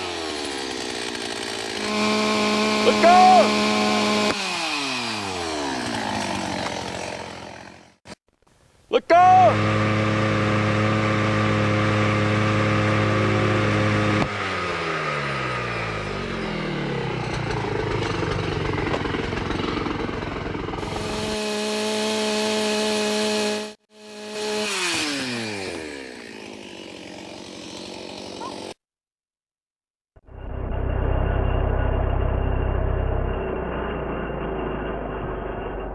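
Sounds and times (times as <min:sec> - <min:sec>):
two-stroke chainsaw revving: 0:00.0 - 0:08.1, 0:09.3 - 0:28.8.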